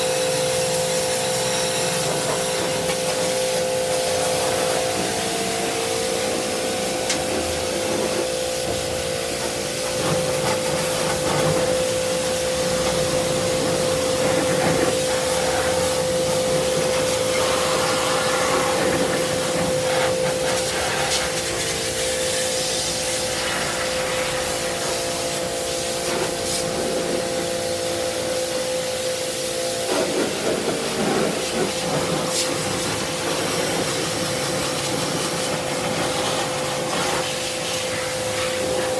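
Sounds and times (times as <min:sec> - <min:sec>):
pressure washer motor whining: 0:00.0 - 0:38.9
water spraying hiss: 0:00.0 - 0:38.9.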